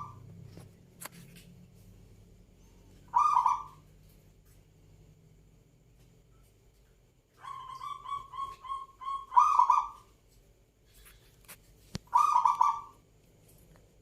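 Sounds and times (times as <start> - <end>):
dove cooing: 3.1 - 3.8, 7.4 - 10.1, 12.1 - 13.0.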